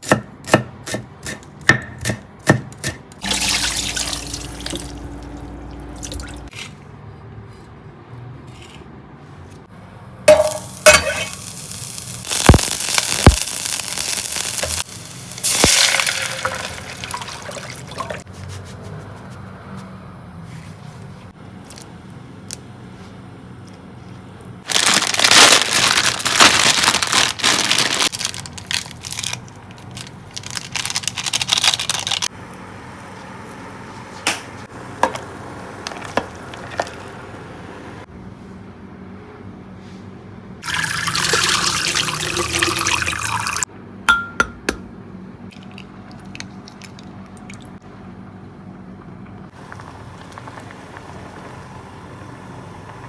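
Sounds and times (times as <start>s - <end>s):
liquid pouring: 3.2s - 6.5s, 15.4s - 18.2s, 40.6s - 43.7s.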